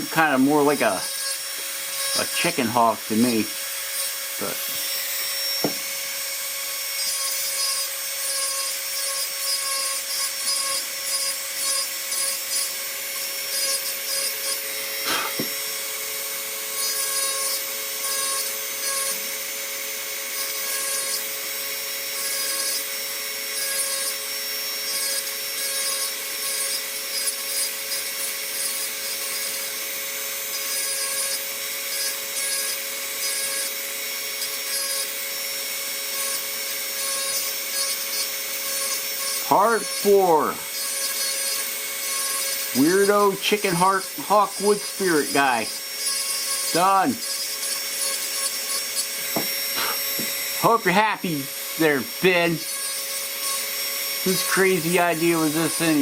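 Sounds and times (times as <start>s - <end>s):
burr grinding wood: 0.0s - 24.2s, 24.8s - 56.0s
rotary tool whining: 0.0s - 56.0s.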